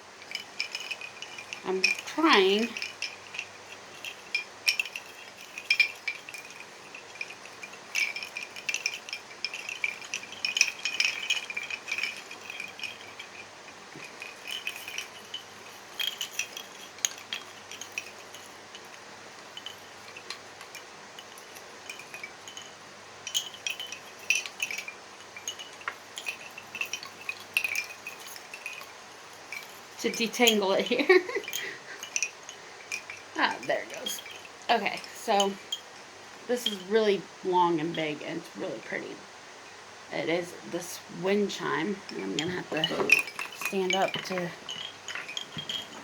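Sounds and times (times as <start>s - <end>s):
wind chime clinking and rattling: 0.0s - 46.0s.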